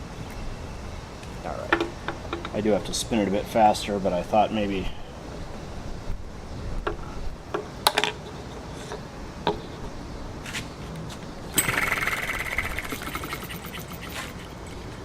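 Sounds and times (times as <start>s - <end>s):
model engine rattling spin: 11.6s - 14.7s.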